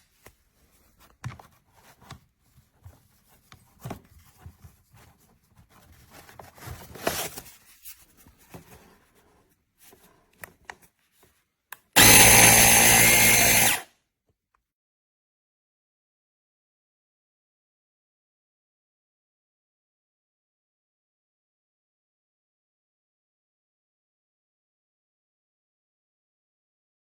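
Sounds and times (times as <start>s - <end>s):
air compressor running: 12.0s - 13.8s.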